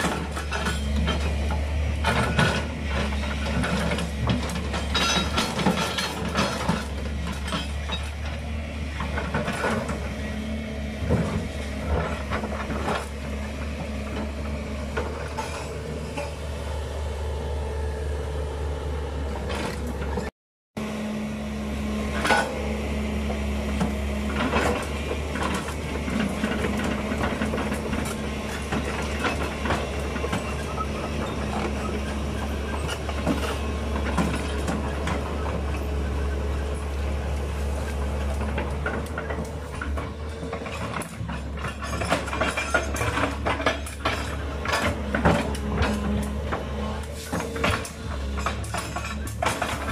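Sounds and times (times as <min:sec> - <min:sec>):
excavator diesel engine running: 0:00.0 - 0:49.9
knocks and rattles: 0:38.2 - 0:49.9.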